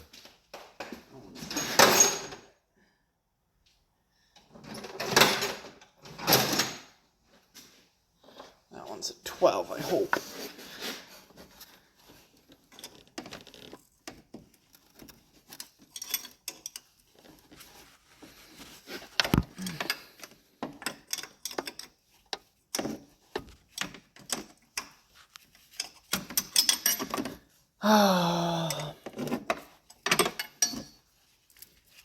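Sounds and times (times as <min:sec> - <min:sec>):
metal tools clinking: 0:14.7 - 0:17.1, 0:23.7 - 0:27.4, 0:29.9 - 0:31.8.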